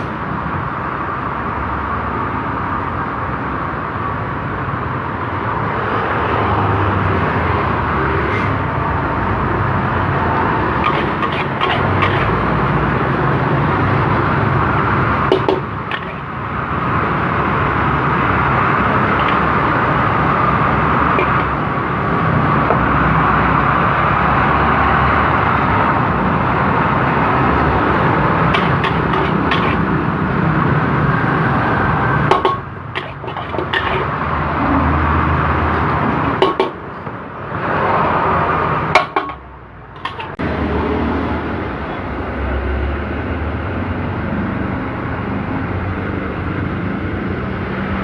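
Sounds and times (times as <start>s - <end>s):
metal utensils clinking: 10.6s - 14.4s, 15.2s - 16.4s, 17.1s - 21.6s, 27.0s - 34.2s, 35.3s - 37.1s, 38.8s - 39.4s, 40.0s - 40.4s.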